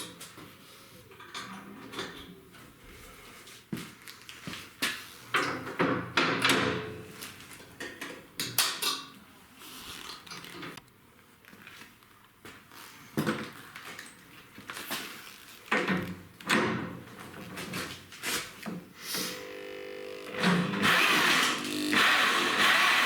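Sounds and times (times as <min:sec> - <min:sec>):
short buzzing tone: 0:19.3 - 0:22.9.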